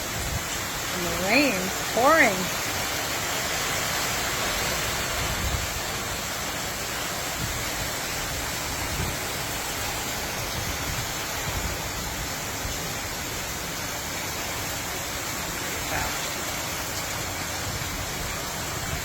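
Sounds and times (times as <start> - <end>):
heavy rain pouring: 0.0 - 19.0
wind buffeting microphone: 4.9 - 6.1, 7.3 - 12.8.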